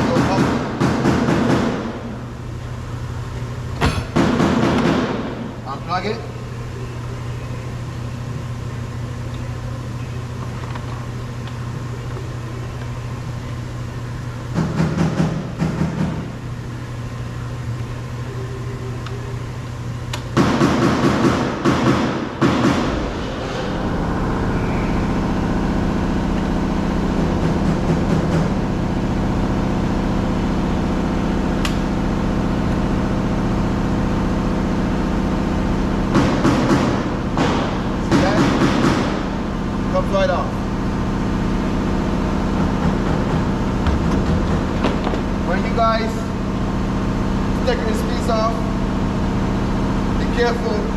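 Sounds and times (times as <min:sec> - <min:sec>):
machine hum: 0:02.9 - 0:04.9.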